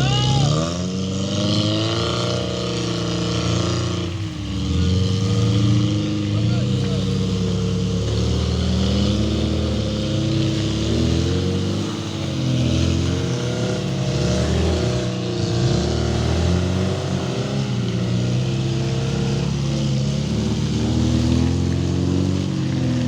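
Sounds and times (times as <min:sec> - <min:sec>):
off-road vehicle engine revving: 0:00.0 - 0:23.0.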